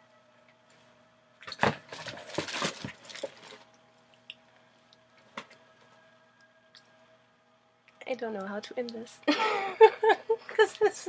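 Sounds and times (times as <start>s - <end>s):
objects rustling and clattering: 1.4s - 3.8s.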